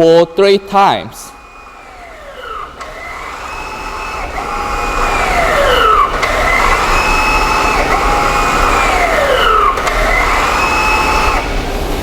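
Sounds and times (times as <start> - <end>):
brake caliper motors whining: 0.0 - 12.0.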